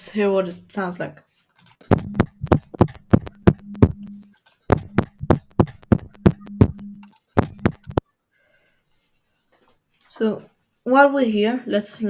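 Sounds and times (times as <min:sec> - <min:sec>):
drum hits: 0:01.9 - 0:08.0.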